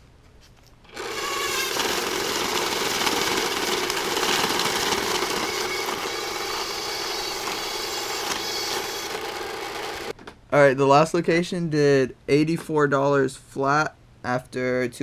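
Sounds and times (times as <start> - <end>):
machine motor running: 0.9 - 10.1.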